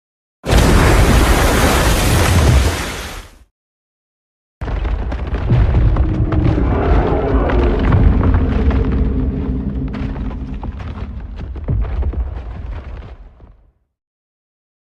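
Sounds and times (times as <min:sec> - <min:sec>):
debris crashing with crackles: 0:00.5 - 0:03.1, 0:04.6 - 0:13.5
explosive rumble: 0:04.9 - 0:13.4.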